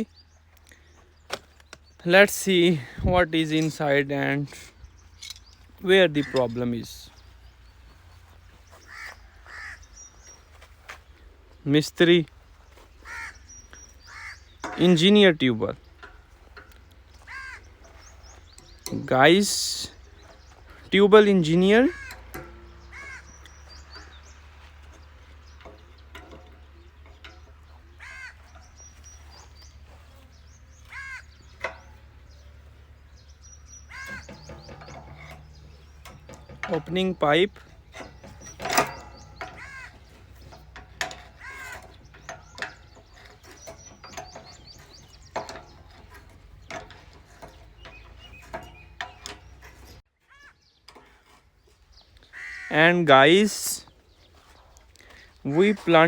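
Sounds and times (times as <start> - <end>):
bird calling: 0.0 - 56.0.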